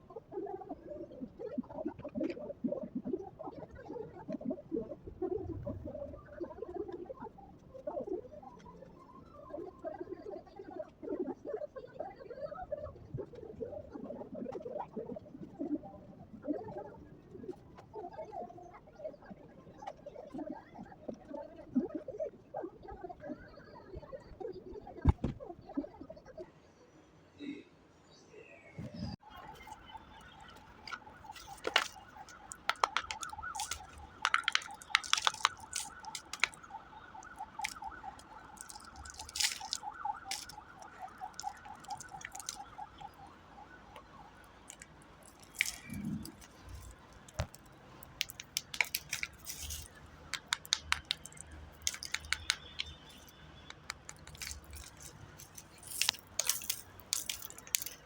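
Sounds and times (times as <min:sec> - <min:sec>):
slate pencils crunching and snapping: 0:30.4 - 0:43.2, 0:44.0 - 0:58.0.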